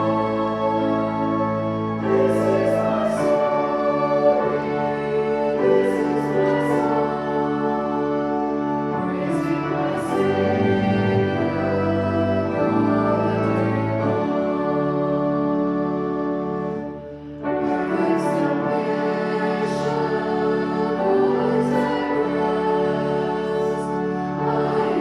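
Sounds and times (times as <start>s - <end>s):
voices singing a hymn: 0.0s - 25.0s.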